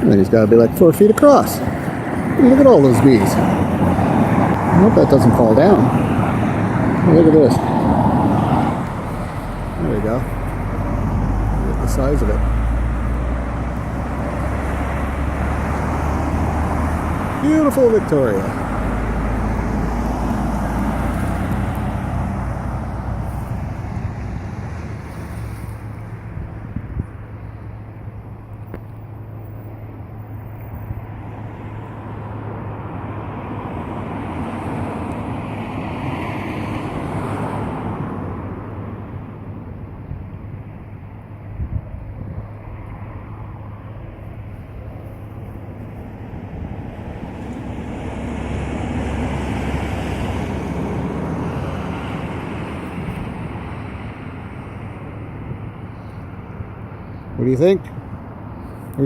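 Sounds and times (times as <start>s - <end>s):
outdoor rumble: 0.0s - 59.0s
wind buffeting microphone: 0.0s - 59.0s.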